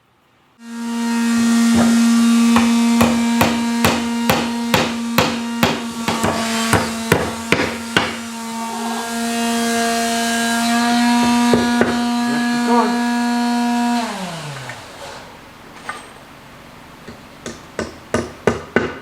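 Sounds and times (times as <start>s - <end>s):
hammer striking: 1.7s - 8.3s, 11.2s - 12.9s, 17.0s - 19.0s
steady held tone: 8.3s - 15.0s.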